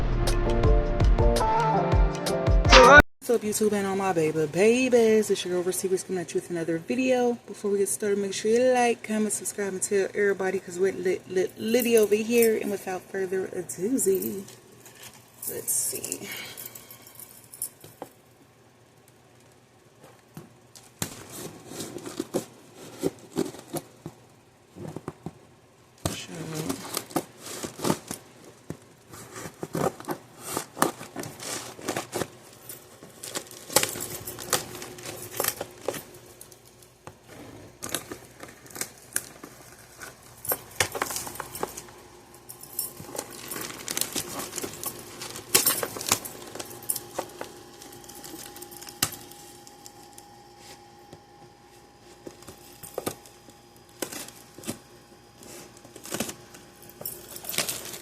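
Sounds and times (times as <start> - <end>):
faint steady hum: 3.3 - 58.0
package being handled: 26.7 - 36.6, 37.2 - 58.0.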